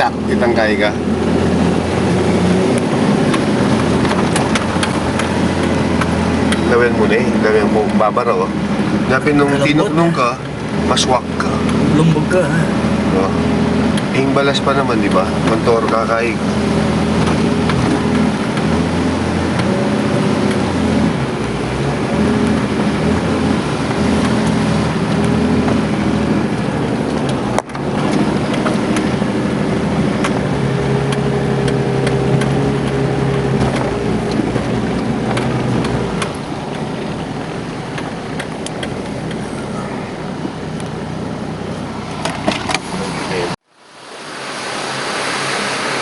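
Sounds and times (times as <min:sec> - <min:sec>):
off-road vehicle engine running: 0:00.0 - 0:43.9
knocks and rattles: 0:02.0 - 0:06.7.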